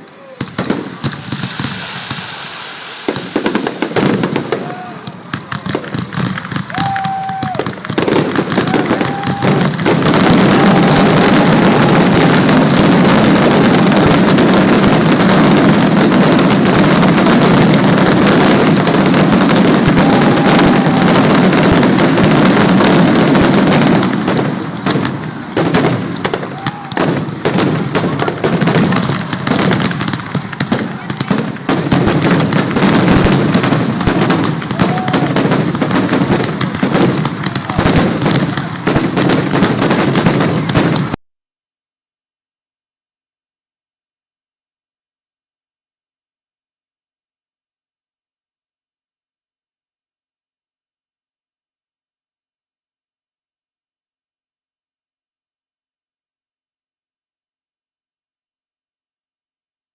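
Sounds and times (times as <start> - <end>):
fireworks crackling: 0.0 - 41.2
fireworks exploding: 0.0 - 41.2.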